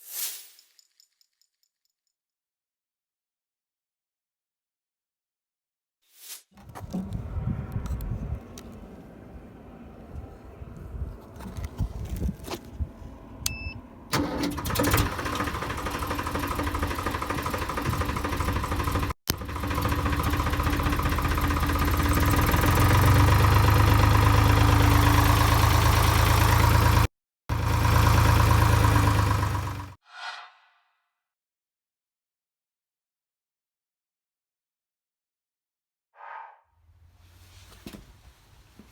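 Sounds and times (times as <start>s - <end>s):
tractor diesel engine running: 6.6s - 30.0s
short beep: 13.5s - 13.8s.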